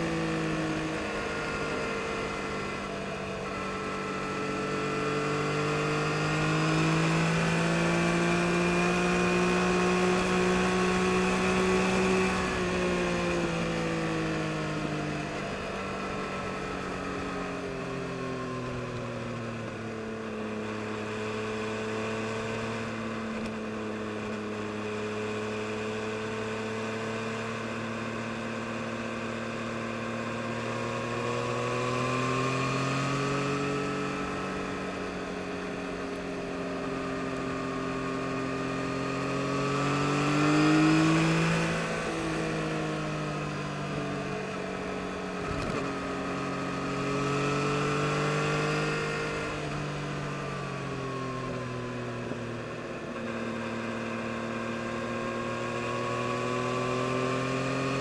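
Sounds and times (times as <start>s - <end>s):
motorcycle engine revving: 0.0s - 17.0s, 29.6s - 51.6s.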